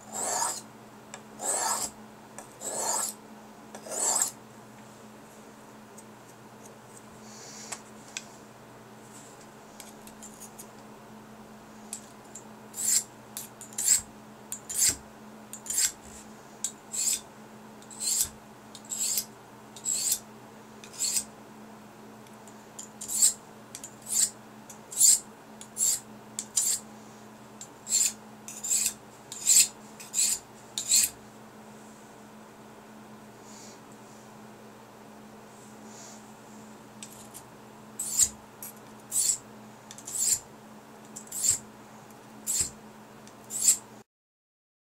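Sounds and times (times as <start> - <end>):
knife scraping on whetstone: 0.0 - 0.6, 1.4 - 2.0, 2.6 - 3.2, 3.8 - 4.4, 12.8 - 15.0, 15.6 - 16.2, 16.9 - 17.2, 17.9 - 20.2, 20.8 - 21.3, 23.0 - 23.4, 24.0 - 24.3, 24.9 - 26.8, 27.8 - 31.2, 37.0 - 37.4, 38.0 - 40.4, 41.2 - 41.6, 42.4 - 42.8, 43.5 - 43.8.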